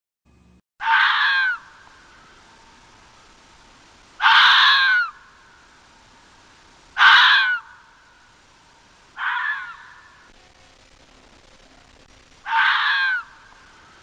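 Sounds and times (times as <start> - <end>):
fox rasping calls: 4.2 - 5.2, 7.0 - 7.9, 9.1 - 10.3, 12.4 - 13.5.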